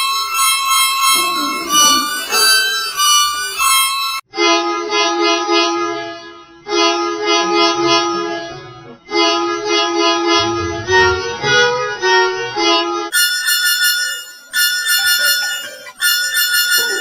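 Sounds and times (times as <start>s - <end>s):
lower-pitched horn pattern: 1.1s - 3.7s, 6.9s - 13.0s
bus musical horn tune: 4.4s - 13.2s.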